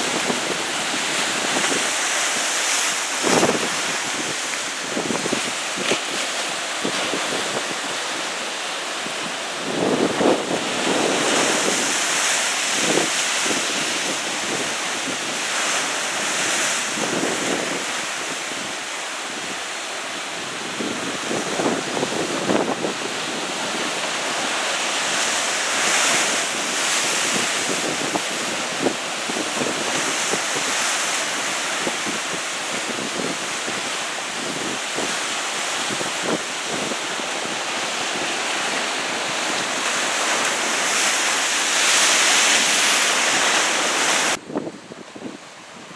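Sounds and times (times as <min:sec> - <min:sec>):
wind buffeting microphone: 0:00.0 - 0:08.3
ocean surf breaking: 0:00.0 - 0:44.5.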